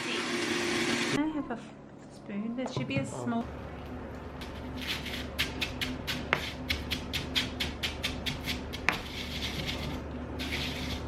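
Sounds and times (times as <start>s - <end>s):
spoon scraping in bowl: 4.4s - 11.0s.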